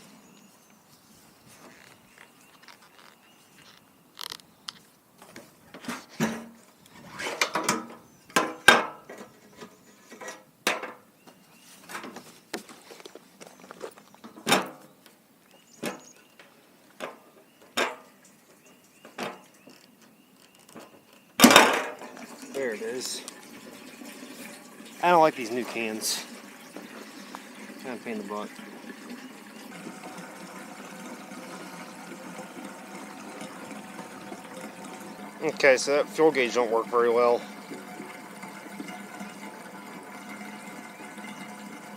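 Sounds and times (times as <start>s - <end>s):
hard parts clicking and scraping: 1.6s - 11.0s, 19.1s - 23.4s.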